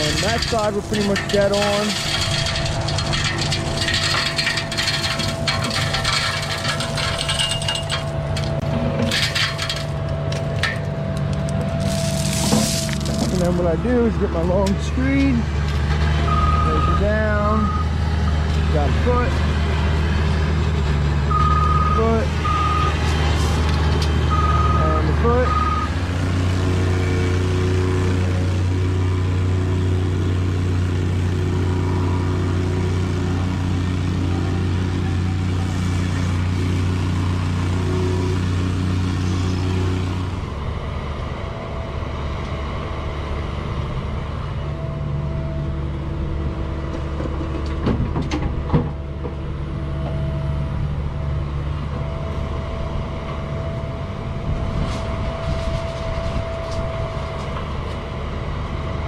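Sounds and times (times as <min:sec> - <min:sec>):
short metallic clanks: 0:00.0 - 0:10.9
heavy equipment engine droning: 0:00.0 - 0:59.0.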